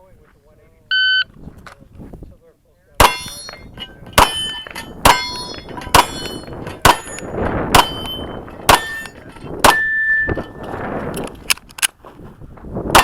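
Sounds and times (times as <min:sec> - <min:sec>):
pistol shots: 0:03.0 - 0:10.4
metallic ringing of steel targets: 0:03.0 - 0:10.8.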